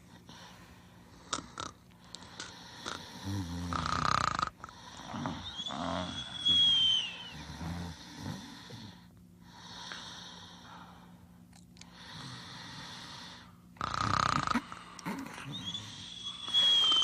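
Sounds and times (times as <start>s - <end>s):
cartoon characters snoring: 1.3s - 1.8s, 2.7s - 6.3s, 7.3s - 9.0s, 12.0s - 16.1s.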